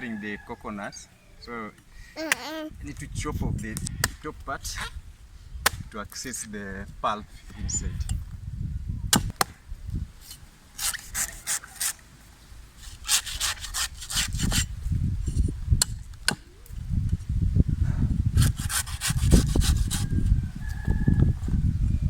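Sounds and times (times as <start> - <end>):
blade chopping coconut husk: 5.6 - 6.0, 9.1 - 9.6.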